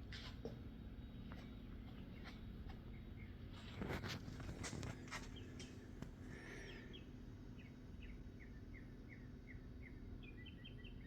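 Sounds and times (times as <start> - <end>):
bird chirping: 6.6 - 11.0.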